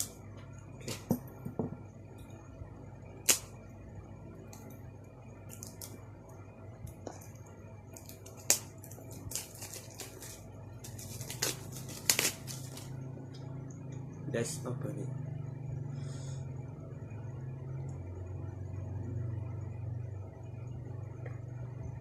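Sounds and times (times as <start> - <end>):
cardboard and plastic snapping: 8.0 - 12.9
packaging crackling: 8.0 - 13.0.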